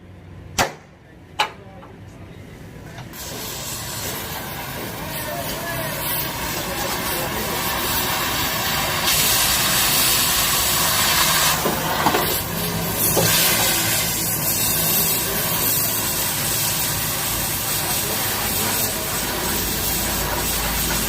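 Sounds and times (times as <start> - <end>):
loud hissing: 3.1 - 21.0.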